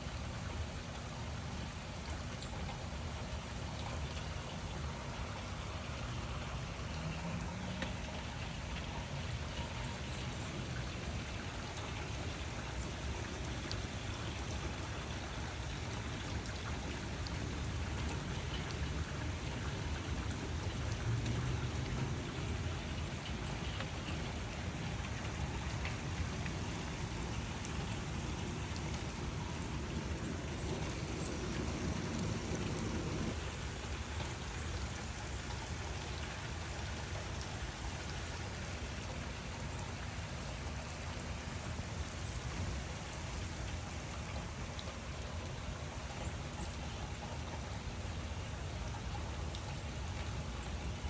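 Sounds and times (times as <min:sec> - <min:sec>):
steady rain falling: 0:00.0 - 0:51.0
raindrops ticking: 0:00.1 - 0:51.0
distant thunder rumble: 0:24.7 - 0:33.4.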